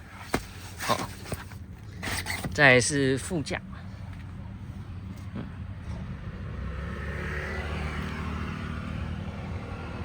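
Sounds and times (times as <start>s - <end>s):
car passing by: 5.9s - 10.0s.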